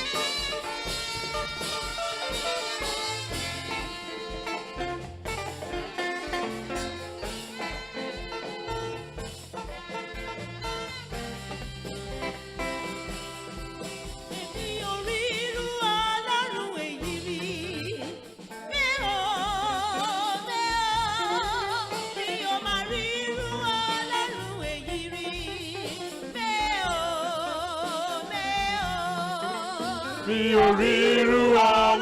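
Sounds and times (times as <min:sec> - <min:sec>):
instrumental backing music: 0:00.0 - 0:32.0
person singing: 0:14.4 - 0:32.0.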